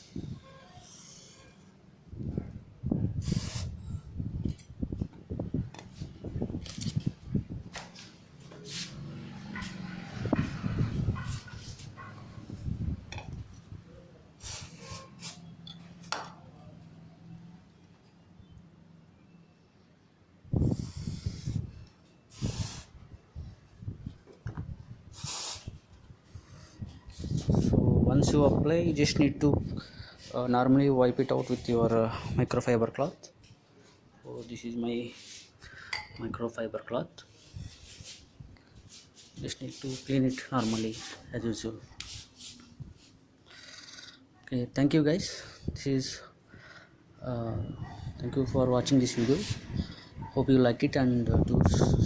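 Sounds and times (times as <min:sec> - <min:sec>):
aerosol spray hissing: 0:03.2 - 0:03.8, 0:14.4 - 0:15.4, 0:20.7 - 0:21.6, 0:22.3 - 0:22.9, 0:25.1 - 0:25.8
bumps and rubbing from handling: 0:09.6 - 0:12.8, 0:37.3 - 0:44.1.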